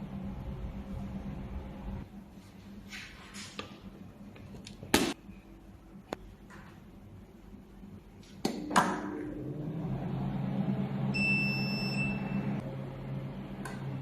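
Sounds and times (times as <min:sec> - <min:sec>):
high electronic beep: 0:11.2 - 0:12.5.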